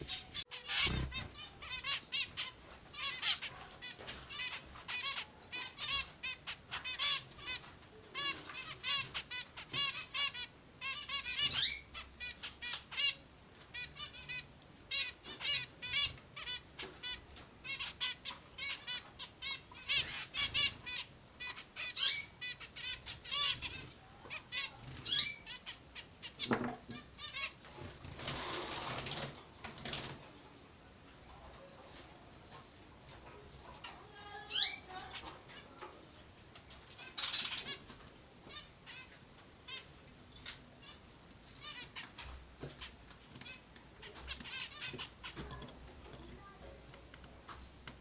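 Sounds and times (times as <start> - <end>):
finch chicks begging calls: 0.0 - 27.6, 33.8 - 35.7, 36.9 - 45.7.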